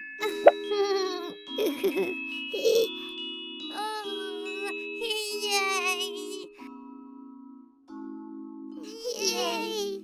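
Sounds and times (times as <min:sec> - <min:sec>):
bell-like background music: 0:00.0 - 0:08.8.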